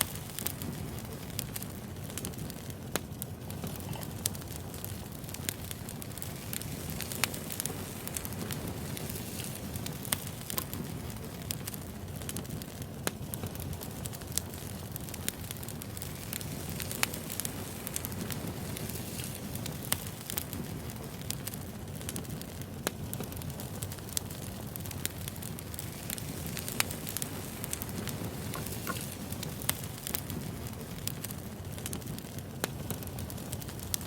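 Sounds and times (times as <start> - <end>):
wood fire crackling: 0.0 - 34.0.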